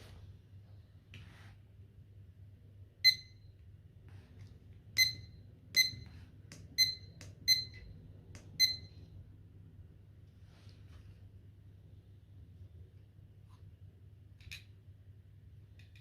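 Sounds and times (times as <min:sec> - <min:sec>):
thermometer short high beeps: 0:03.0 - 0:03.4, 0:05.0 - 0:06.1, 0:06.8 - 0:07.9, 0:08.6 - 0:09.0.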